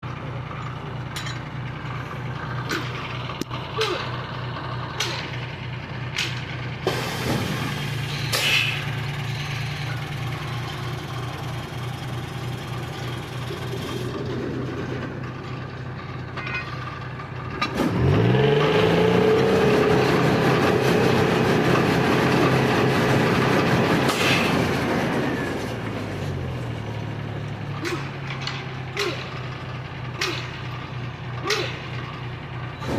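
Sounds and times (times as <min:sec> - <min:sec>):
diesel engine idling and revving: 0:00.0 - 0:32.9
short hisses: 0:08.1 - 0:08.9.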